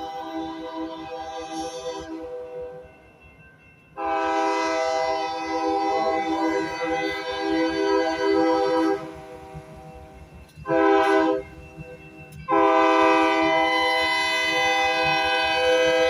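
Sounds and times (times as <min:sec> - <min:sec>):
locomotive air horn blasts: 0:00.0 - 0:02.8, 0:04.0 - 0:09.5, 0:10.6 - 0:11.4, 0:12.5 - 0:16.0
low train rumble: 0:00.0 - 0:16.0.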